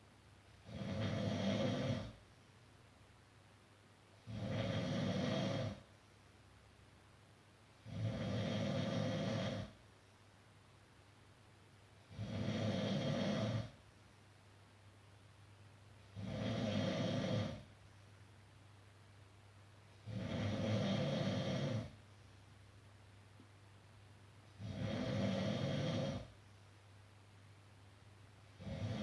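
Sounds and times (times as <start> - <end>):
person snoring: 0.6 - 2.2, 4.2 - 5.8, 7.8 - 9.8, 12.1 - 13.8, 16.1 - 17.7, 20.0 - 22.0, 24.6 - 26.3, 28.6 - 29.0.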